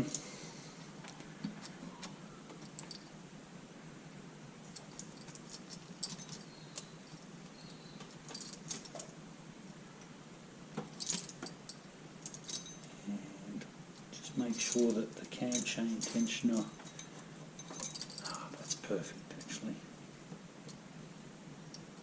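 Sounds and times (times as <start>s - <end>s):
metallic chain clicks and rattles: 1.6s - 3.1s, 4.7s - 9.2s, 10.9s - 13.0s, 14.5s - 18.9s.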